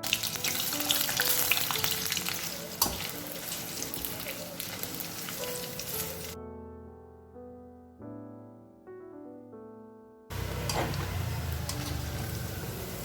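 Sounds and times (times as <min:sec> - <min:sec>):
cheese sizzling in hot oil: 0:00.0 - 0:06.4
soft piano music: 0:00.0 - 0:13.0.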